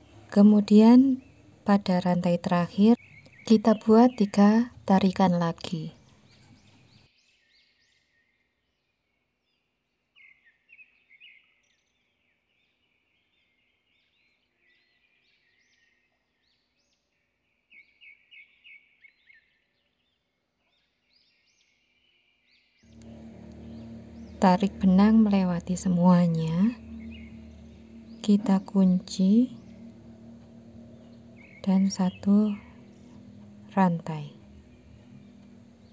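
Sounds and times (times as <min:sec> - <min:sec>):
faint high bird chirping: 0:22.9 - 0:35.9.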